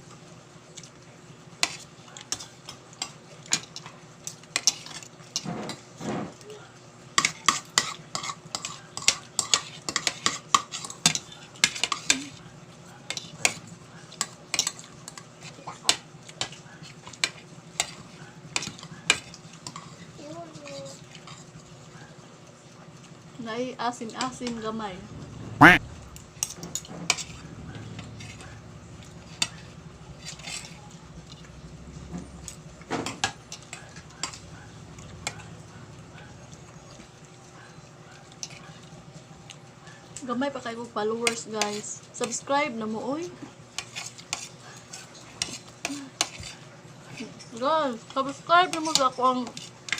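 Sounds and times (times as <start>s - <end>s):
eating and chewing: 0.0s - 23.4s, 24.0s - 49.9s
cutlery clicking and scraping dish: 1.6s - 5.9s, 7.2s - 12.4s, 13.1s - 13.6s, 14.2s - 20.0s, 26.4s - 31.4s, 32.0s - 35.5s, 43.8s - 46.6s.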